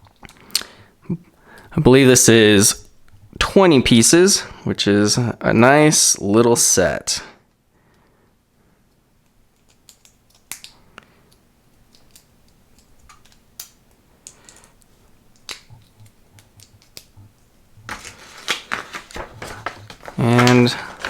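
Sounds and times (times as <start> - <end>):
faint rustling: 14.4 - 21.0.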